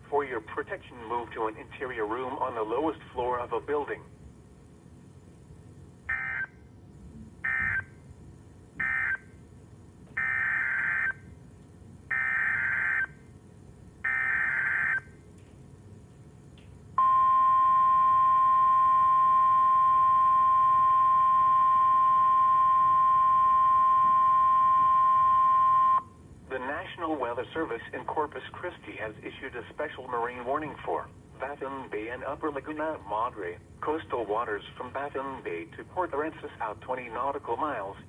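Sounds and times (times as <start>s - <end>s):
steady warning alarm tone: 6.1s - 6.7s, 7.4s - 8.0s, 8.8s - 9.3s, 10.2s - 11.3s, 12.1s - 13.2s, 14.0s - 15.2s, 17.0s - 26.2s.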